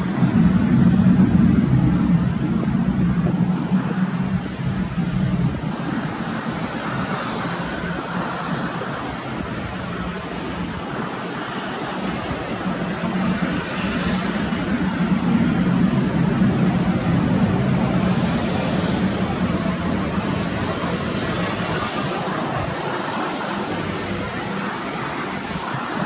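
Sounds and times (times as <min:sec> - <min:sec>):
jet engines roaring in flight: 0:00.0 - 0:26.0.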